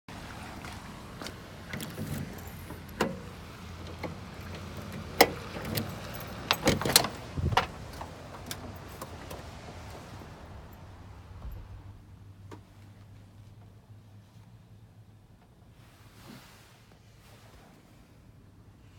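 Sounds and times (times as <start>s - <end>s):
keys jangling: 1.8s - 3.4s, 5.0s - 9.6s.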